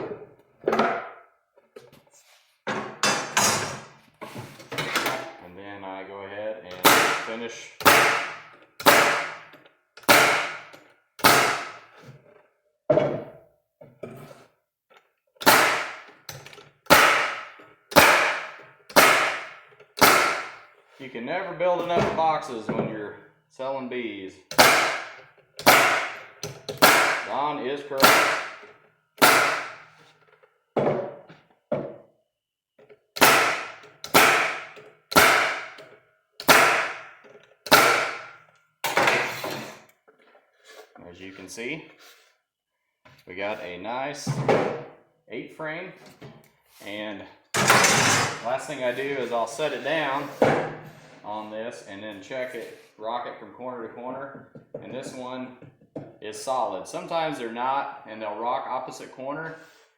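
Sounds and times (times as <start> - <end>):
staple gun shots into wood: 6.8 - 11.8, 15.4 - 16.1, 16.9 - 20.6, 24.5 - 27.3, 28.0 - 28.6, 29.2 - 29.9, 33.2 - 35.8, 36.4 - 37.1, 37.7 - 38.4
sharp impacts on wood: 6.8 - 11.9, 15.4 - 20.6, 24.5 - 27.3, 28.0 - 30.0, 33.2 - 39.3.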